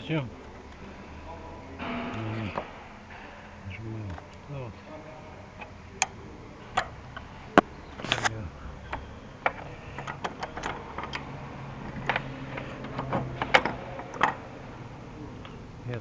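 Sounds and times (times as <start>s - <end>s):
faint low hum: 0.0s - 16.0s
light clicks and taps on car parts: 5.6s - 14.6s.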